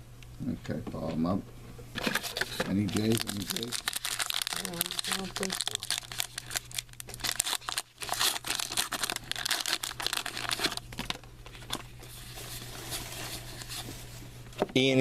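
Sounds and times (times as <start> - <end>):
card pack wrapper crinkling: 2.0 - 13.8.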